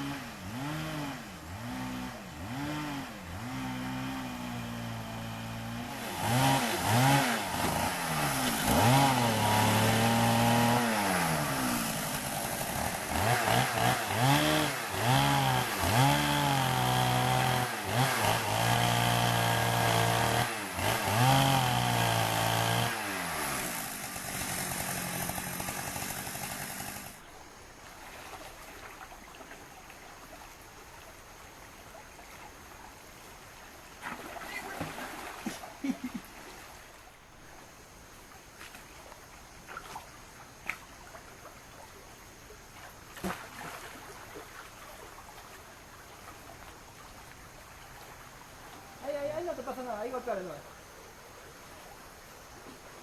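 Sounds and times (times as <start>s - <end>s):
chainsaw cutting wood: 0.0s - 27.2s.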